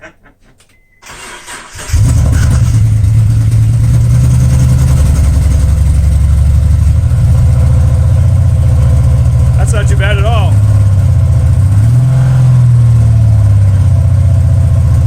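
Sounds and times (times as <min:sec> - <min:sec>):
car engine cranking on starter: 0:00.6 - 0:04.6
loud car engine idling: 0:01.1 - 0:15.0.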